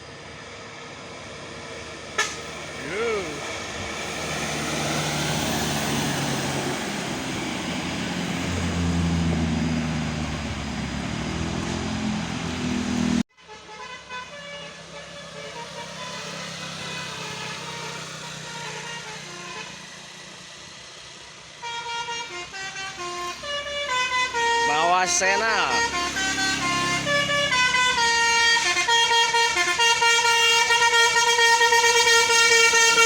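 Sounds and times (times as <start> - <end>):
vehicle droning: 0.0 - 13.3, 14.7 - 33.0
multi-tone horn playing tune: 2.2 - 3.4, 13.4 - 19.8, 21.6 - 33.0.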